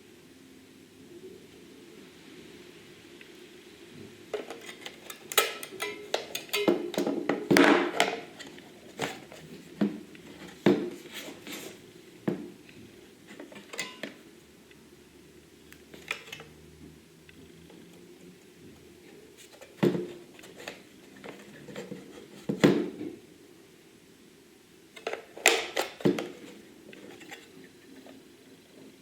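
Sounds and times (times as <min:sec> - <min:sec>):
hard plastic parts clicking: 0:04.4 - 0:09.4.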